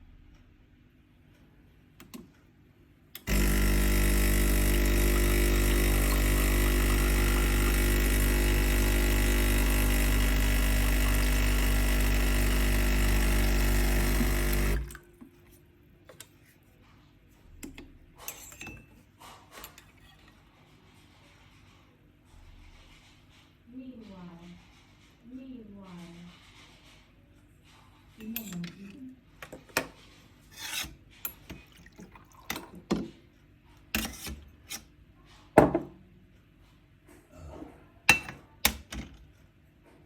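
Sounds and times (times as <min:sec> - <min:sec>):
espresso machine pump buzzing: 0:03.2 - 0:15.0.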